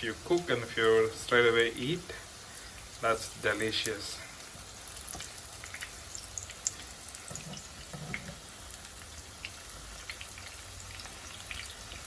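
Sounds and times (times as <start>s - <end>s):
chicken deep-frying in oil: 0.0s - 12.0s
oil popping and crackling: 0.0s - 12.0s.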